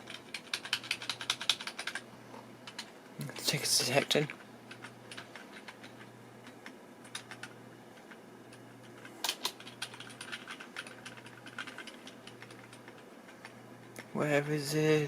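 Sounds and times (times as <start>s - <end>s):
keyboard keys clicking: 0.0s - 2.0s, 2.6s - 2.9s, 4.7s - 8.2s, 8.8s - 14.1s
low steady hum: 0.0s - 15.0s.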